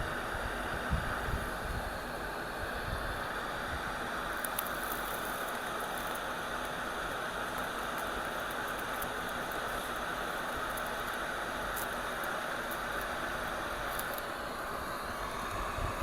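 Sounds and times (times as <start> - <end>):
electric blower whooshing: 13.5 - 16.0.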